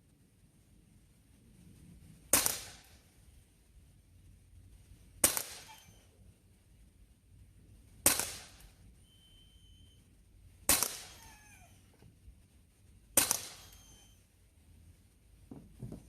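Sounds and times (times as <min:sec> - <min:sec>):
air pistol sharp crack: 0:02.3 - 0:03.0, 0:05.2 - 0:05.8, 0:08.0 - 0:08.8, 0:10.7 - 0:11.3, 0:13.2 - 0:13.8.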